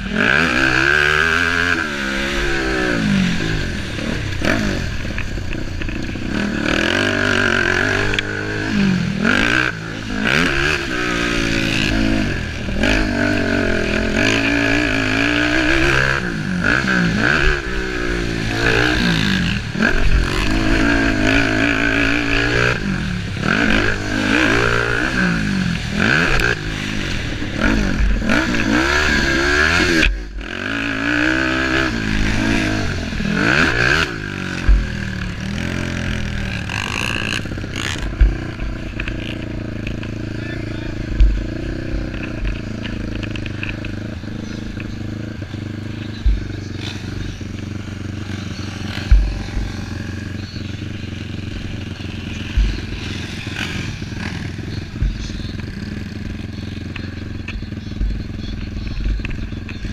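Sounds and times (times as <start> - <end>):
racing engines revving: 0.0 - 59.9.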